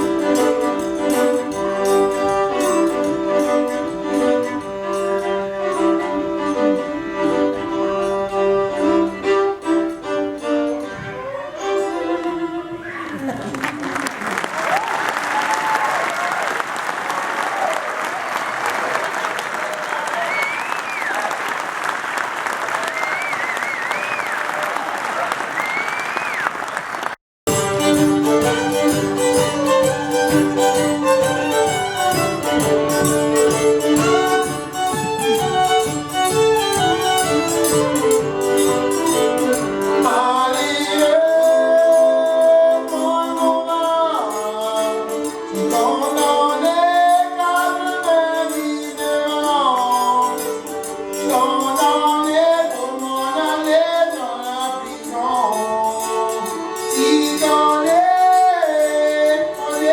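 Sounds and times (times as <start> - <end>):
fiddle melody: 0.0 - 13.6, 27.5 - 59.9
strummed rhythm guitar: 0.0 - 13.8, 27.5 - 59.9.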